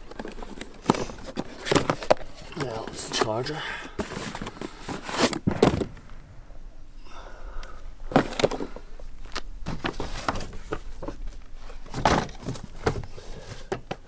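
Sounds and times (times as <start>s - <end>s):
knocks clicks and rustles: 8.1s - 14.0s.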